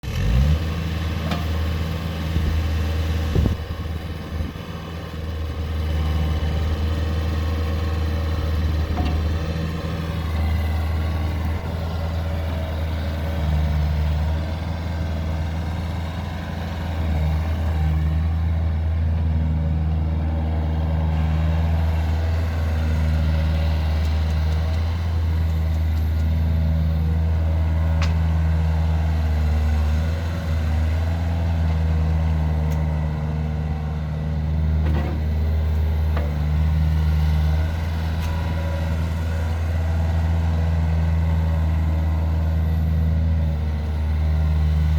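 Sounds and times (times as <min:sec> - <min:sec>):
diesel engine running: 0:00.0 - 0:44.9.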